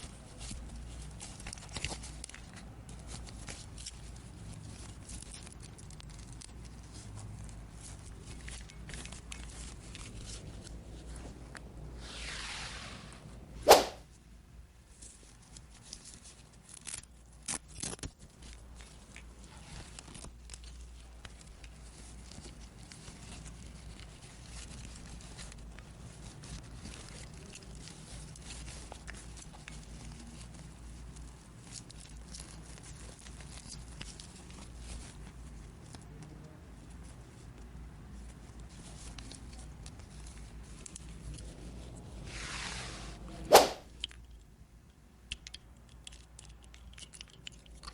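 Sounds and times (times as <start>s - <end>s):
sharp plastic clacks: 43.5s - 47.9s
toy pieces clicking: 45.3s - 47.9s.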